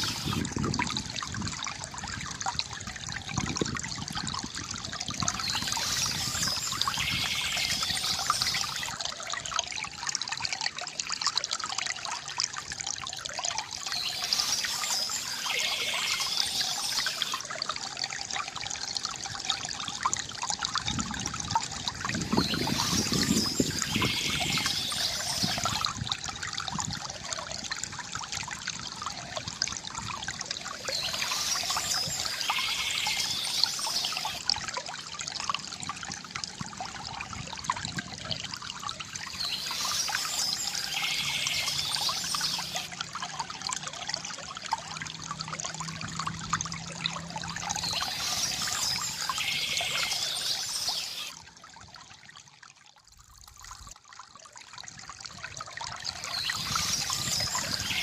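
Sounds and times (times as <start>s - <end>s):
stream trickling over stones: 0.0s - 58.0s
birdsong: 5.2s - 8.9s, 13.8s - 17.4s, 22.2s - 25.9s, 30.8s - 34.4s, 39.2s - 42.9s, 47.7s - 51.3s, 56.1s - 58.0s.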